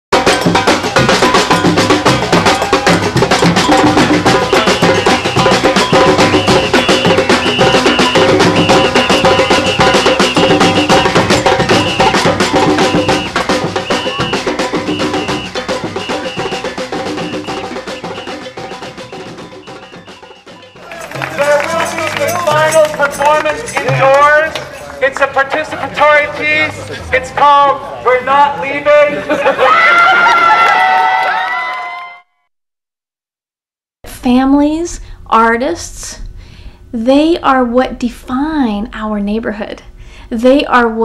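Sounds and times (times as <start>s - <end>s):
music with fast busy percussion: 0.1s - 27.7s.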